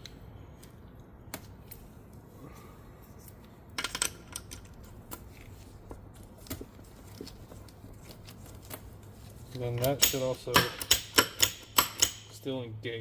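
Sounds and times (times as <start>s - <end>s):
metal parts clicking and clinking: 3.8s - 4.9s, 9.6s - 12.3s.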